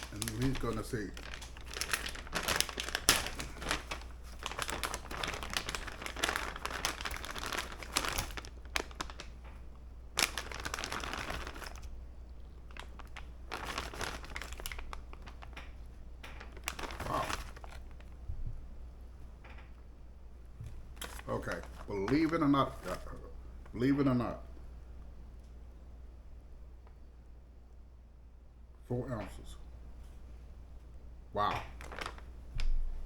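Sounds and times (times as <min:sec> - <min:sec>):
sharp crackles and small clicks: 0:00.0 - 0:09.6
hands crinkling and rustling: 0:00.0 - 0:18.3, 0:20.6 - 0:23.8, 0:31.6 - 0:32.9.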